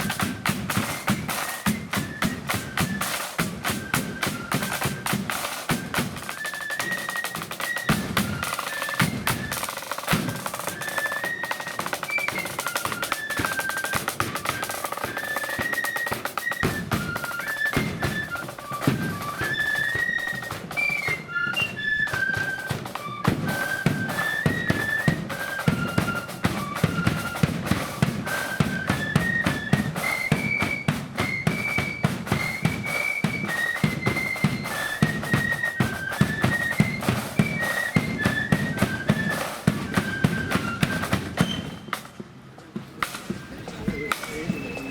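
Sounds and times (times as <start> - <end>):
flute melody: 0.0 - 42.1, 43.3 - 44.9
snare drum rolls: 0.0 - 44.9.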